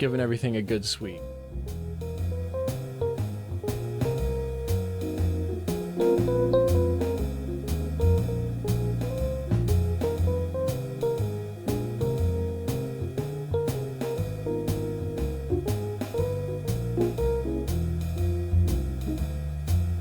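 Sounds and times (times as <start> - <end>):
bass: 0.0 - 20.0
drum kit beat: 0.0 - 20.0
guitar: 5.0 - 17.7.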